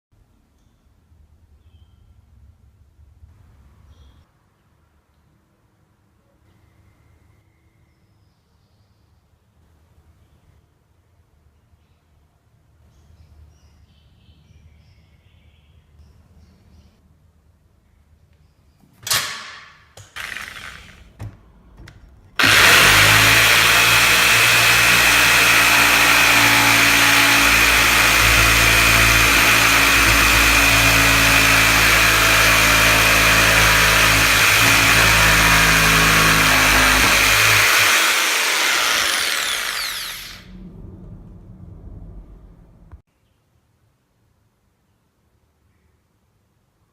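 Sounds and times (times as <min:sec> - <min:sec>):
electric jigsaw motor running: 0:20.2 - 0:21.1, 0:22.4 - 0:40.5.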